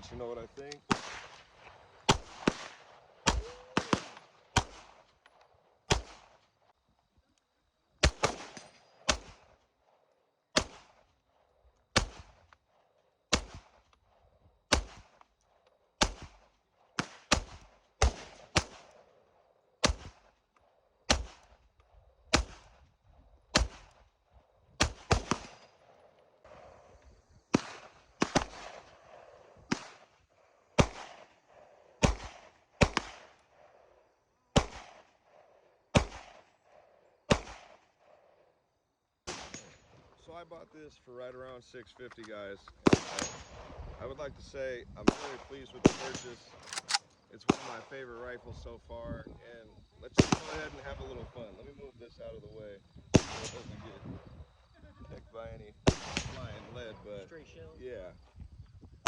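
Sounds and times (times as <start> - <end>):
pistol shots with echo: 0.7 - 6.4, 8.0 - 20.4, 21.1 - 21.6, 22.3 - 22.8, 23.5 - 24.0, 24.8 - 26.9, 27.5 - 30.2, 30.8 - 38.2, 39.3 - 39.9, 42.8 - 43.8, 45.1 - 48.0, 50.2 - 50.9, 53.2 - 54.0, 55.9 - 56.9.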